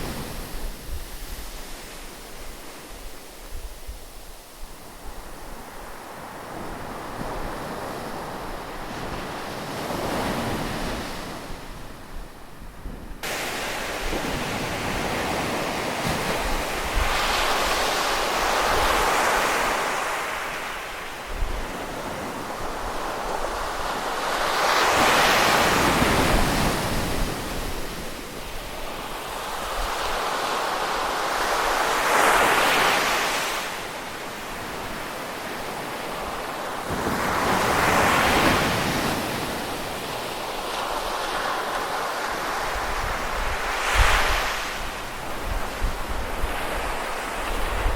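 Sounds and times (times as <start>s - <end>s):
ocean waves breaking: 13.2s - 47.9s.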